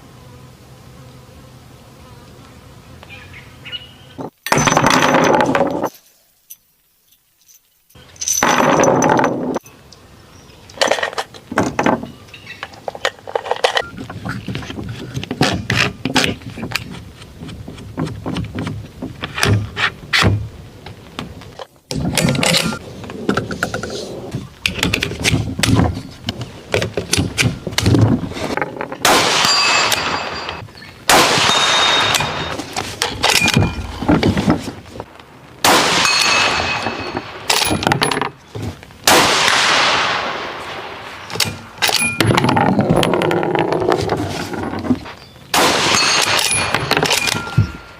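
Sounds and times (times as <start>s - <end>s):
rifle shots with echo: 29.0s - 30.4s, 31.1s - 32.5s, 35.6s - 37.6s, 39.0s - 41.3s, 45.5s - 47.5s
metallic ringing tones: 29.4s - 30.8s, 41.8s - 43.1s, 45.9s - 47.9s.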